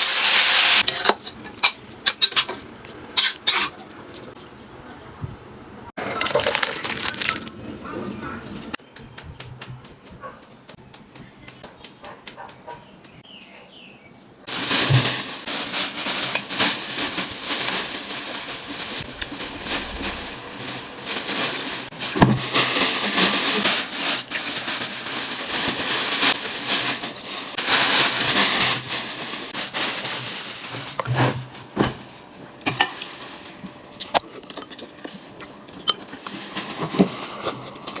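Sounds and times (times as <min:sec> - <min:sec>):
food sizzling in oil: 0:00.0 - 0:02.4.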